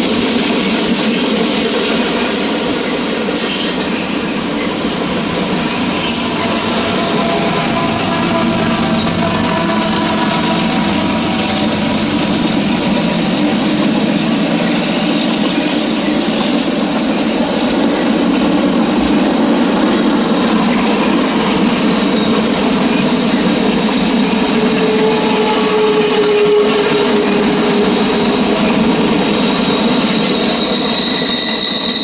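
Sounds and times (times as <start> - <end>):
train wheels on rail: 0.0 - 32.0
faint wheel squeal: 2.8 - 5.1, 5.9 - 9.6, 24.6 - 32.0.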